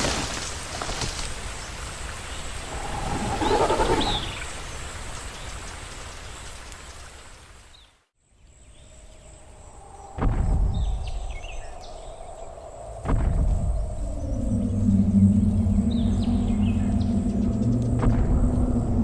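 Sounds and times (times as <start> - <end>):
low rumbling monster roar: 2.6 - 4.4, 14.0 - 19.0.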